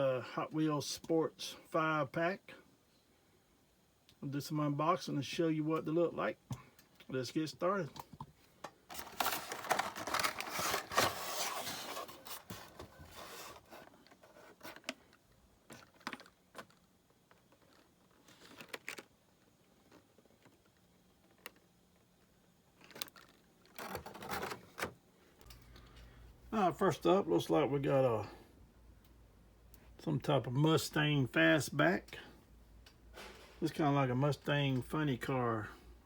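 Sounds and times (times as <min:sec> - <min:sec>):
packaging rustling and ripping: 0:08.9 - 0:15.0, 0:17.5 - 0:19.1.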